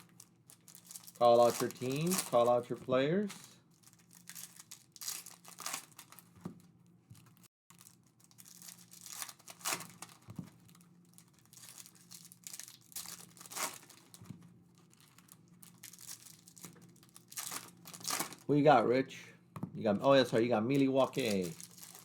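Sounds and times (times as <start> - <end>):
packaging torn and crinkled: 0.0 - 6.3, 7.2 - 18.4, 21.0 - 22.0.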